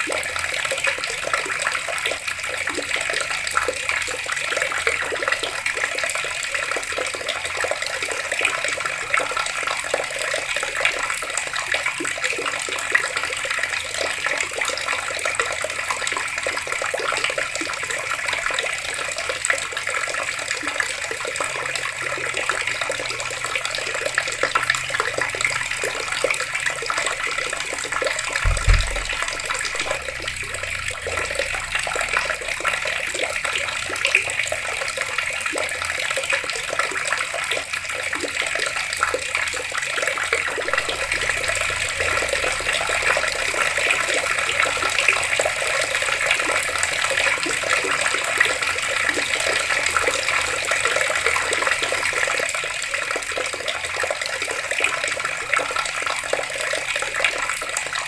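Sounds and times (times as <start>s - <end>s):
water running from taps: 0.0s - 58.0s
low thump: 28.4s - 31.8s.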